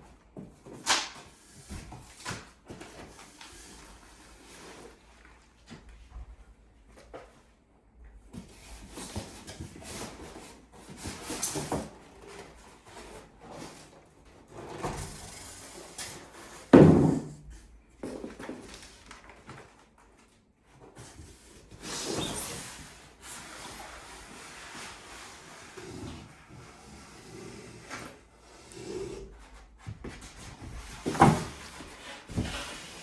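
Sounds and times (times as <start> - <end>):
cardboard box scraping and rustling: 30.1 - 33.0.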